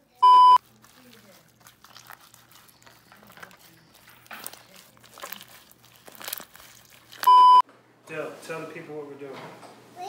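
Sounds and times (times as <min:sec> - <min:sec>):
crinkling and rustling handling: 0:00.0 - 0:07.6
short electronic beep: 0:00.2 - 0:00.6, 0:07.3 - 0:07.6.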